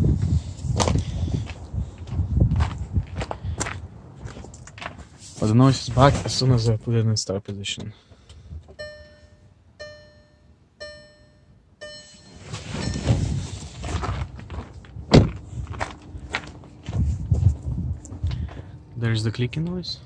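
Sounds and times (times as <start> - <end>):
faint steady hum: 7.6 - 20.0
car warning chime: 8.8 - 13.6
rustling: 12.2 - 18.5
loud thump: 15.1 - 15.4.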